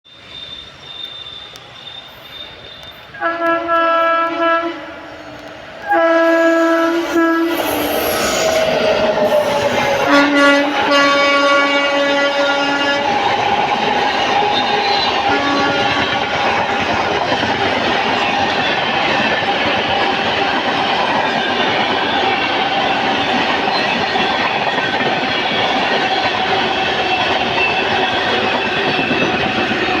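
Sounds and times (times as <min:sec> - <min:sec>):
train wheels clattering: 0:01.0 - 0:30.0
train horn blasting: 0:03.2 - 0:13.2, 0:14.9 - 0:16.4.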